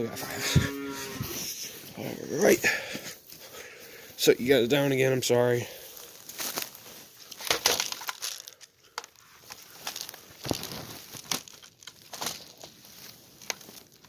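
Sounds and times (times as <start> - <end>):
rustling from handling: 6.0 - 8.6, 9.2 - 14.0.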